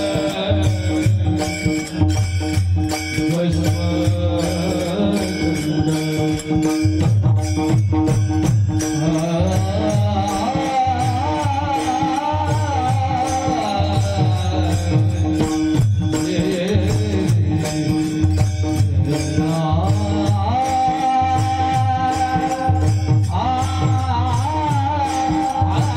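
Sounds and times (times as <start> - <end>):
man singing ornamented melody: 0.0 - 2.2, 3.0 - 25.9
hand cymbals striking: 0.0 - 25.9.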